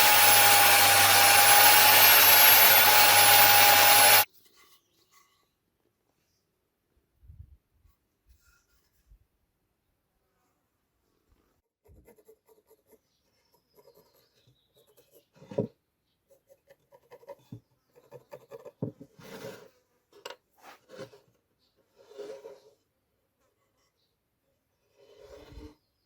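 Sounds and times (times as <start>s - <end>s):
scraping and rubbing strokes: 20.6s - 24.0s, 24.8s - 25.8s.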